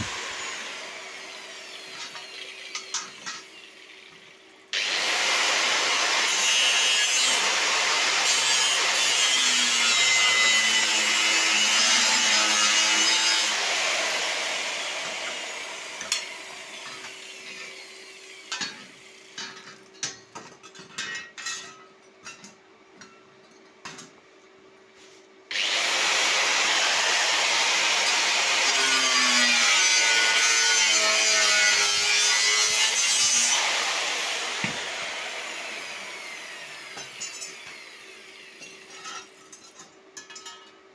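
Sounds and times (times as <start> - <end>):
power tool running under load: 0.0 - 2.8, 4.7 - 9.0, 12.5 - 18.4, 25.5 - 38.8.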